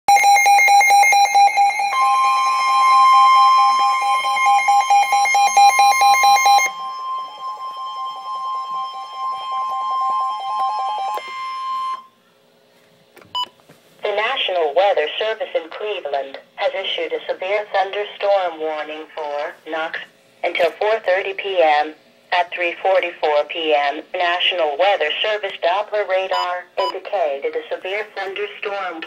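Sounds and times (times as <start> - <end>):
steady high alarm tone: 0.1 - 12.2.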